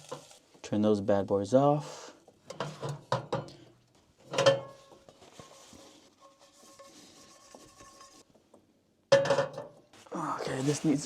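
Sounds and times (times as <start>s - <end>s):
cookware clank: 4.3s - 5.0s, 9.1s - 9.8s.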